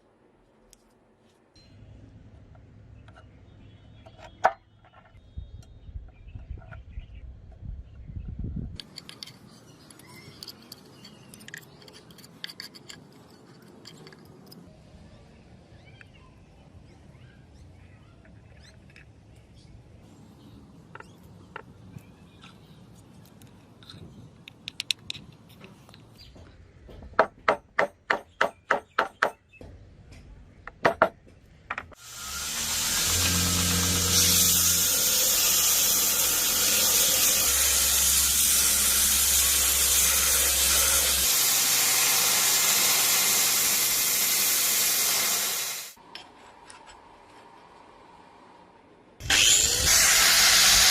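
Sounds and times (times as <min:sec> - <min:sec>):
metallic clicks and scraping: 0:08.8 - 0:14.7, 0:20.9 - 0:26.1.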